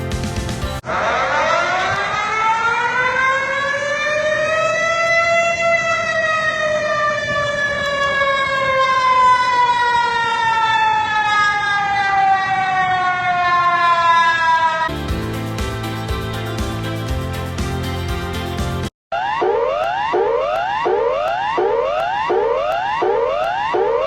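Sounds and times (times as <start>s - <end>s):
emergency siren wailing: 0.8s - 14.9s, 19.1s - 24.0s.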